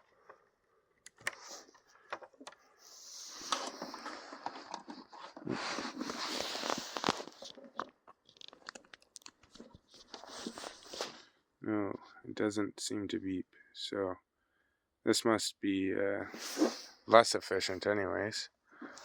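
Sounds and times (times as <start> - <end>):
rustling and scraping: 1.2 - 11.3.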